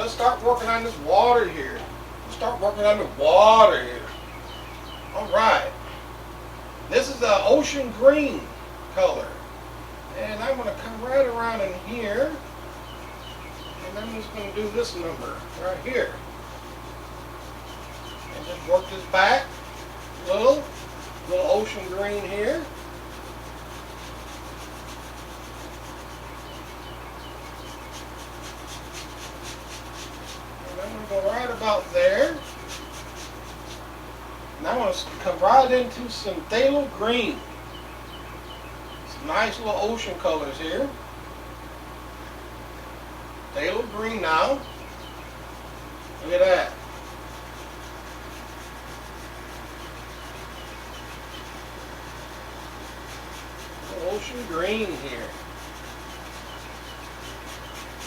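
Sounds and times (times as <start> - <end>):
paintbrush scrubbing on canvas: 0.0 - 3.8, 10.3 - 37.4, 43.6 - 58.0
steady low hum: 0.0 - 58.0.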